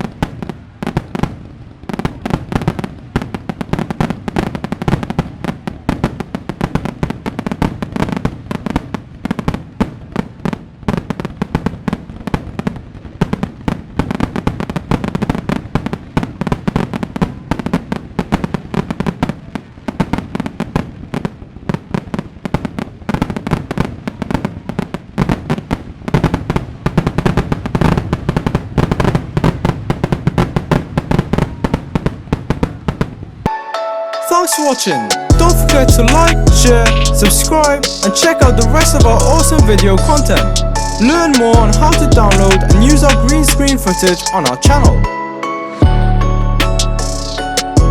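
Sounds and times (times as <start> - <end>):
fireworks bangs and crackles: 0.0 - 33.6.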